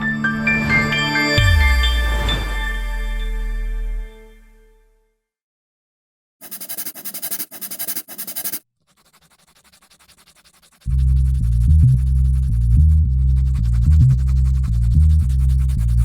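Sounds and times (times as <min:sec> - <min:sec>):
pencil scratching on paper: 0:06.4 - 0:16.0
bass-heavy music: 0:10.9 - 0:16.0.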